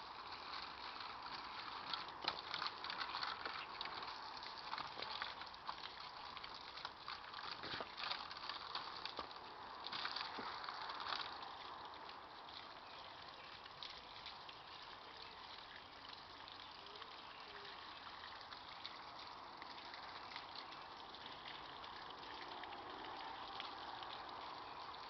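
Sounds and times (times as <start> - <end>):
running water: 0.0 - 25.0.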